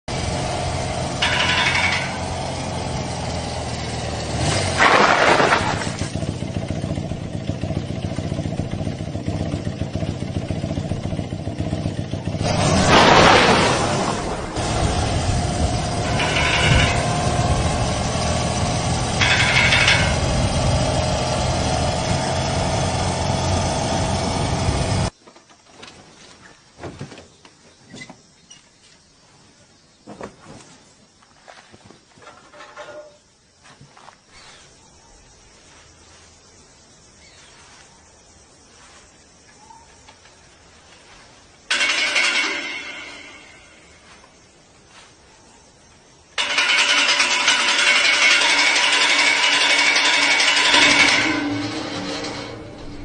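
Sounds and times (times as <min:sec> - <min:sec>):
motorcycle engine idling: 0:00.1 - 0:04.5, 0:05.8 - 0:12.6, 0:14.6 - 0:25.1, 0:46.4 - 0:53.0.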